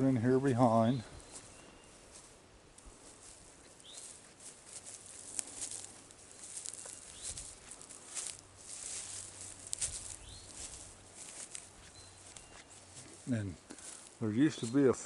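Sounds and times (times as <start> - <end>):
footsteps crunching: 0.0 - 15.0
bird chirp: 0.6 - 2.2, 3.6 - 4.2, 6.3 - 7.6, 8.8 - 15.0.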